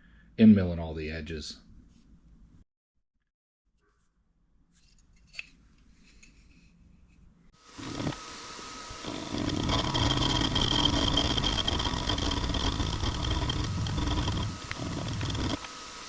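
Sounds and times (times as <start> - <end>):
spindle motor running: 7.6 - 16.0
end mill cutting metal: 7.7 - 16.0.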